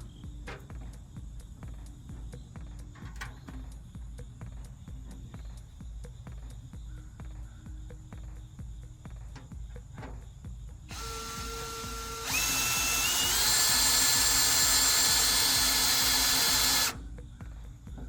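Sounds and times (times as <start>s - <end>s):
power drill driving screw: 10.9s - 17.0s.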